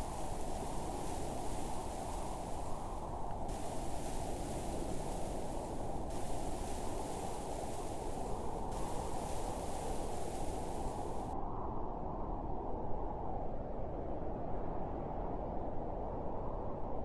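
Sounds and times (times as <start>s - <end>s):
steady wind rush: 0.0s - 11.4s.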